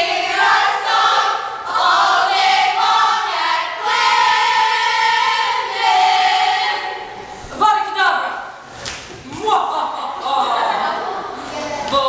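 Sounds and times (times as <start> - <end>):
group singing a cappella: 0.0 - 7.4.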